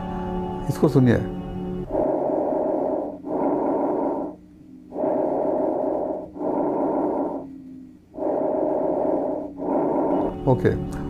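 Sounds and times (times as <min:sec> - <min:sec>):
breath sounds through stethoscope: 0:01.9 - 0:10.4.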